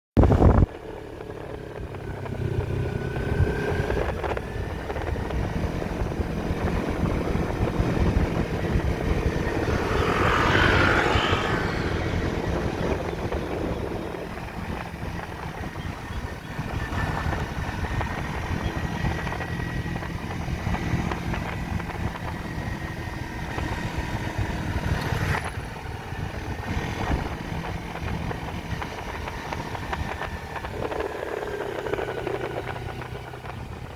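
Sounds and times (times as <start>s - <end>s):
motorcycle engine running: 27.0s - 33.9s.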